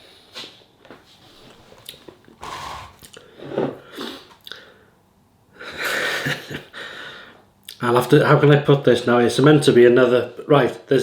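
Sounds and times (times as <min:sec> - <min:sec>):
breath out: 0:01.4 - 0:04.8
person chewing wetly: 0:01.5 - 0:02.1.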